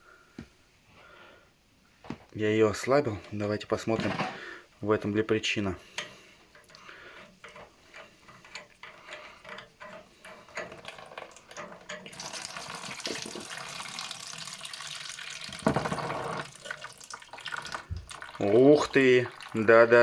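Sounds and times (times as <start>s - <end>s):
metal clicks and knocks: 6.0s - 12.2s
water running out: 10.8s - 20.0s.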